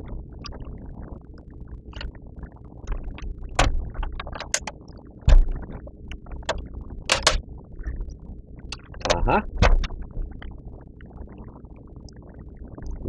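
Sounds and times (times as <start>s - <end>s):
clicks and taps of laptop parts: 2.9s - 4.7s, 6.5s - 8.0s
heavier knock: 5.3s - 5.6s, 9.0s - 9.9s.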